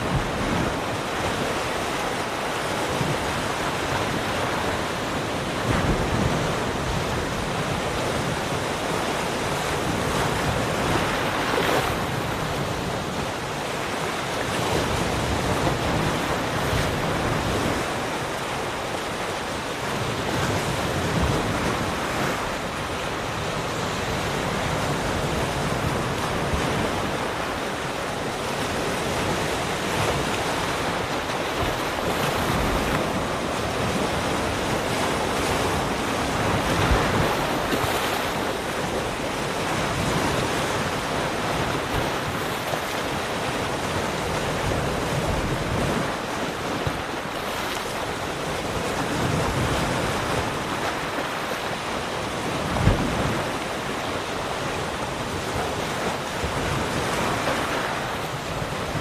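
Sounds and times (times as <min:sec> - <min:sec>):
ocean waves breaking: 0:00.0 - 0:59.0
wind on microphone: 0:00.0 - 0:59.0.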